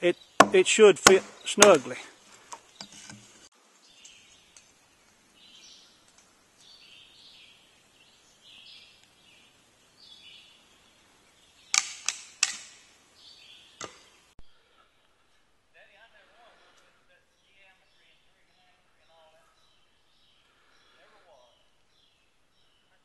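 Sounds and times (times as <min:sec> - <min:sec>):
chisel knocking into a log: 0:00.4 - 0:01.7.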